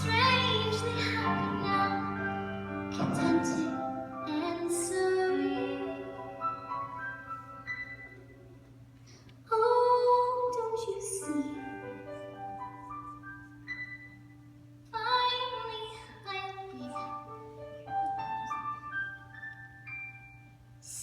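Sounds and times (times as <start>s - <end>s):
woman singing with vibrato: 0.0s - 6.4s
soft sustained accompaniment: 0.0s - 21.0s.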